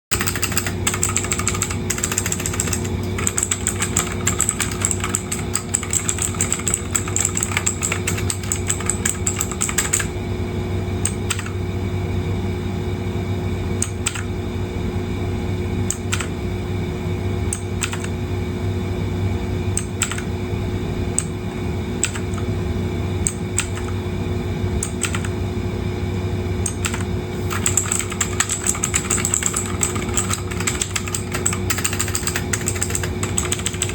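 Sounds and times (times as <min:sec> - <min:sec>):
mechanical keyboard typing: 0:00.1 - 0:10.1, 0:11.0 - 0:11.6, 0:13.8 - 0:14.3, 0:15.9 - 0:16.3, 0:17.6 - 0:18.2, 0:19.8 - 0:20.3, 0:22.0 - 0:22.5, 0:23.3 - 0:24.0, 0:24.8 - 0:25.4, 0:26.7 - 0:33.9
steady low hum: 0:00.1 - 0:33.9.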